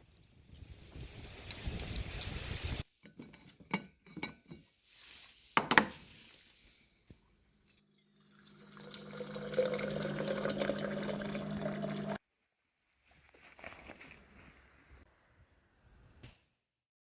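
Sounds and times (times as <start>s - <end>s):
liquid pouring into container: 7.9s - 12.2s.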